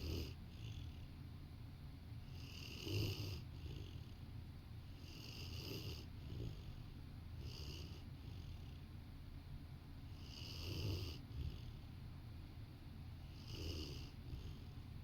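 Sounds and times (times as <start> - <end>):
dog snoring: 0.0 - 1.2, 2.2 - 4.3, 4.9 - 8.9, 10.1 - 12.0, 13.2 - 14.9.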